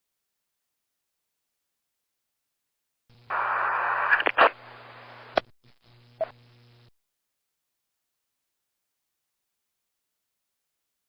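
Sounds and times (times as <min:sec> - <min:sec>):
radio static hiss: 0:03.1 - 0:06.9
steady hum: 0:03.1 - 0:06.9
sharp radio clicks: 0:03.3 - 0:06.5.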